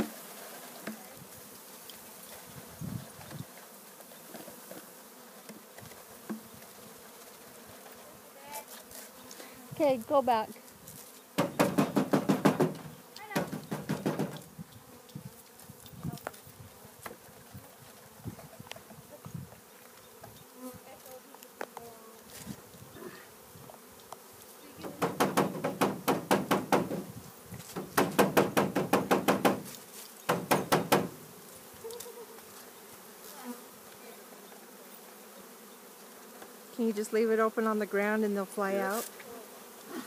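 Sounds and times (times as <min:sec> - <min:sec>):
bees buzzing: 0:00.0 - 0:40.0
fast rattling knocks: 0:11.4 - 0:14.4, 0:24.8 - 0:27.1, 0:27.8 - 0:29.7, 0:30.3 - 0:31.2.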